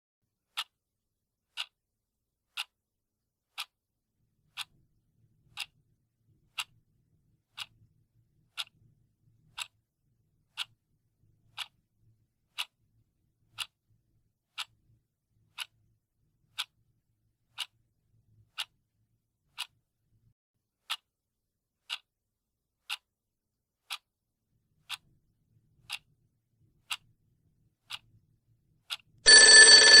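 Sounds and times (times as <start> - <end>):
clock ticking: 0.5 - 0.8, 1.5 - 1.8, 2.5 - 2.8, 3.5 - 3.8, 4.5 - 4.8, 5.5 - 5.8, 7.5 - 7.8, 8.5 - 8.9, 9.5 - 9.8, 10.5 - 10.8, 11.5 - 11.8, 12.5 - 12.8, 13.5 - 13.8, 14.6 - 14.8, 15.5 - 15.8, 16.5 - 16.8, 17.5 - 17.8, 18.5 - 18.8, 19.5 - 19.8, 21.8 - 22.1, 22.8 - 23.1, 23.8 - 24.1, 24.8 - 25.1, 25.8 - 26.1
old telephone bell ringing: 29.3 - 30.0.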